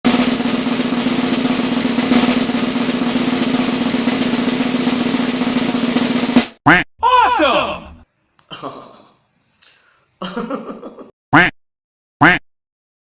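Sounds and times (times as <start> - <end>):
snare drum roll: 0.0 - 6.6.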